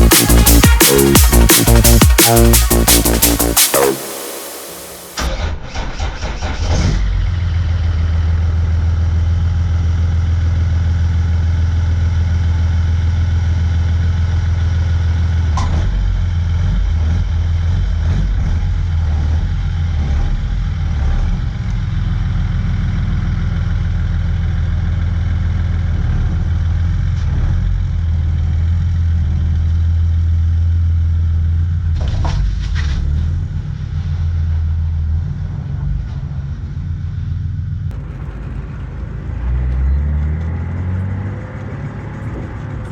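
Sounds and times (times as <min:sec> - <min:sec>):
diesel engine idling: 0:37.9 - 0:42.9.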